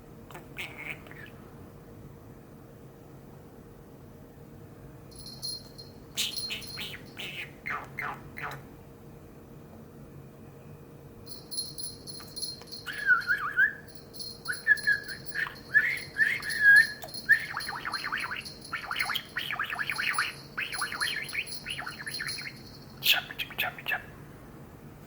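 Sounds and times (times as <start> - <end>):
budgerigar warbling and chirping: 0.6 - 1.3, 6.2 - 8.6, 14.5 - 24.0
steady high-pitched tone: 5.1 - 7.2, 11.3 - 23.0.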